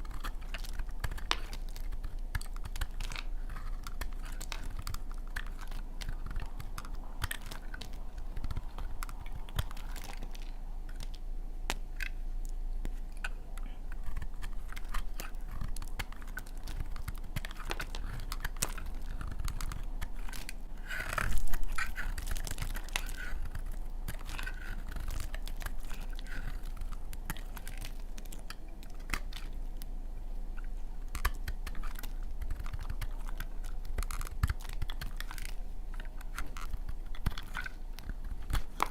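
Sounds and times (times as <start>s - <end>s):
blade cutting through soap: 14.0s - 29.6s.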